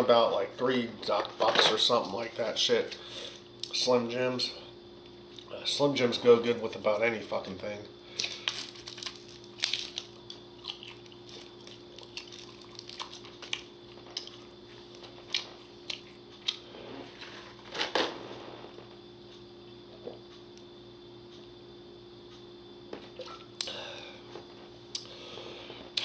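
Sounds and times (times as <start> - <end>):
faint steady hum: 0.0 - 26.0
person chewing with wet clicks: 8.2 - 16.7, 23.2 - 23.8, 24.9 - 25.1.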